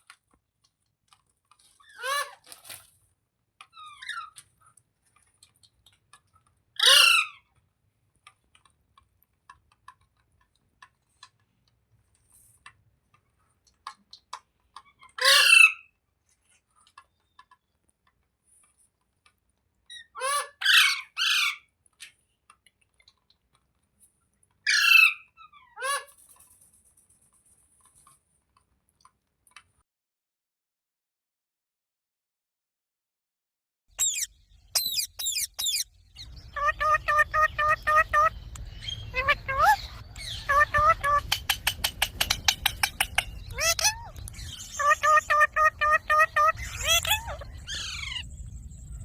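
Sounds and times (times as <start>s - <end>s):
parrot squawking loudly: 6.8s - 7.4s, 15.2s - 15.8s, 20.0s - 21.6s, 24.7s - 26.1s, 34.0s - 35.8s, 36.4s - 38.4s, 39.1s - 41.4s, 43.5s - 48.2s.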